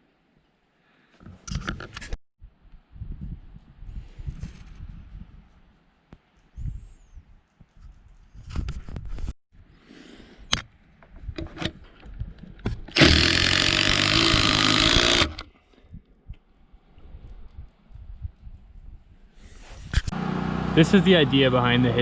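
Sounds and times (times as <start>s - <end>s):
handheld power tool running: 12.9s - 15.5s.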